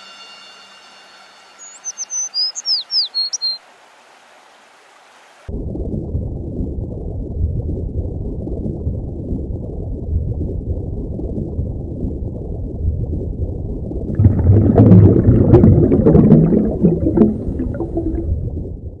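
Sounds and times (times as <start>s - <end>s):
muffled underwater rumble: 5.5s - 18.9s
water bubbling and gurgling: 14.1s - 18.5s.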